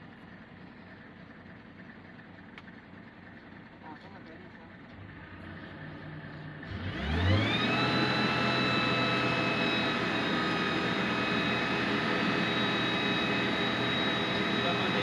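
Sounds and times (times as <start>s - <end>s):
electric motor whining: 6.6s - 15.0s.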